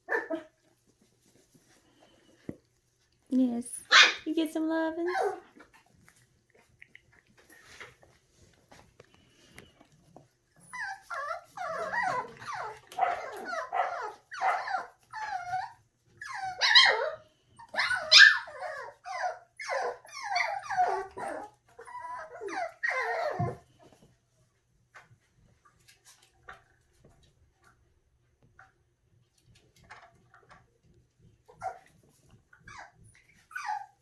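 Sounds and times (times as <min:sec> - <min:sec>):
puppies yapping: 0:10.6 - 0:23.6, 0:32.6 - 0:34.0.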